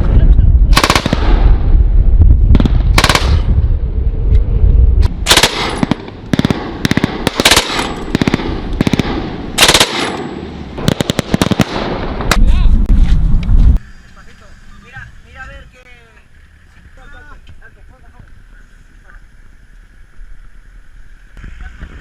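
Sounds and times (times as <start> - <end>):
single gunshots: 0.7 - 1.6, 2.5 - 3.6, 5.2 - 12.5
machine gun bursts: 5.3 - 9.0, 9.6 - 10.1.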